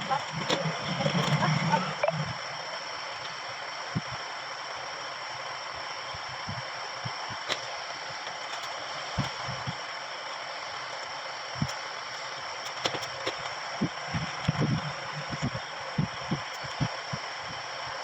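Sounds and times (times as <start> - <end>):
steady hiss: 0.0 - 18.0.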